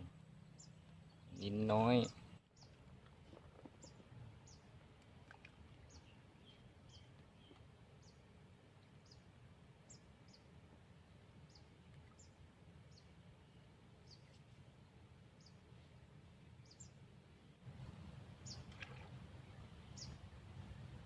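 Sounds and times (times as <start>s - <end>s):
small bird chirping: 19.5s - 20.2s.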